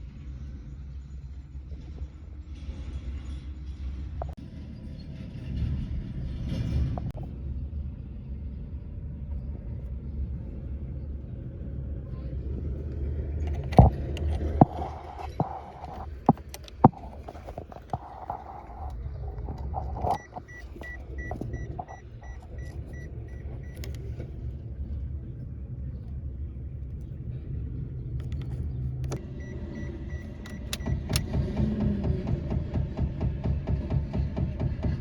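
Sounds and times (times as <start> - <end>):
clicks of keys and switches: 13.4 - 24.2, 28.2 - 31.4
rapid high electronic beeps: 19.8 - 23.8.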